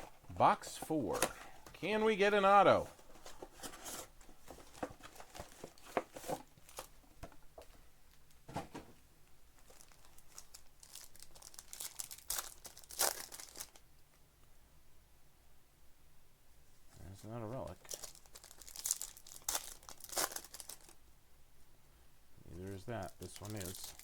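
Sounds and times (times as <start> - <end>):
crinkling and tearing of wrappers: 9.6 - 13.8, 17.7 - 21.0, 22.6 - 24.0.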